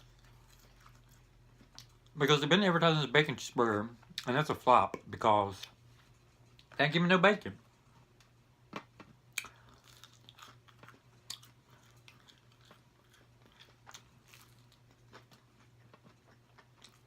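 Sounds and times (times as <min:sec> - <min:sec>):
person chewing food: 0:00.0 - 0:02.2, 0:08.9 - 0:17.0.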